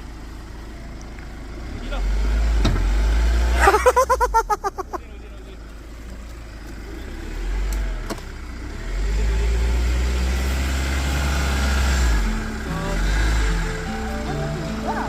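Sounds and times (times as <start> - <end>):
diesel engine revving: 1.4 - 3.8, 5.1 - 15.0.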